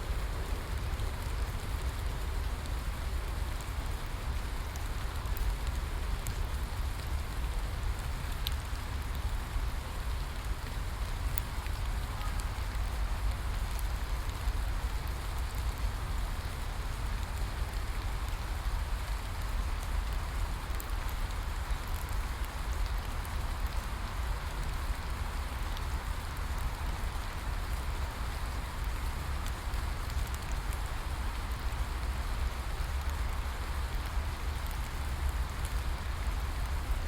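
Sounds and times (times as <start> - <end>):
steady rain falling: 0.0 - 37.0.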